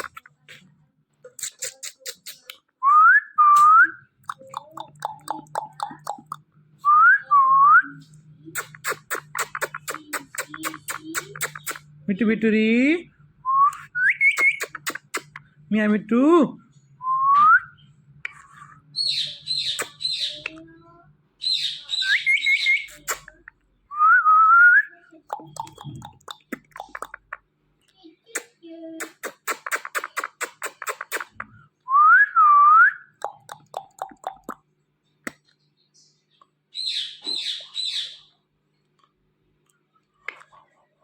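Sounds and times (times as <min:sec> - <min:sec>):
parrot high chirps: 0:08.6 - 0:11.9, 0:14.0 - 0:15.4, 0:19.0 - 0:20.6, 0:21.4 - 0:23.5, 0:36.7 - 0:38.4
parrot whistling: 0:21.4 - 0:23.3.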